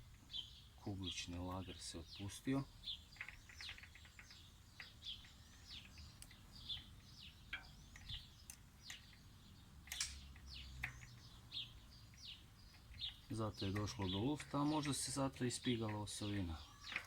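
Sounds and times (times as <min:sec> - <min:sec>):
small birds chirping: 0:00.0 - 0:17.0
faint clicks: 0:03.1 - 0:09.2.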